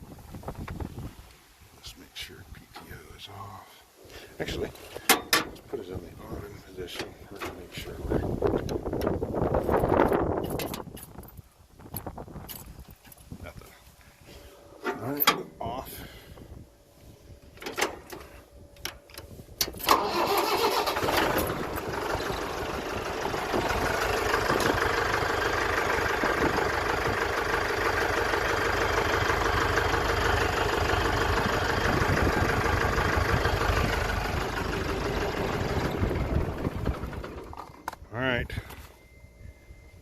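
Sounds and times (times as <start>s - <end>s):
diesel engine cranking and idling: 4.2s - 10.9s, 14.5s - 39.4s.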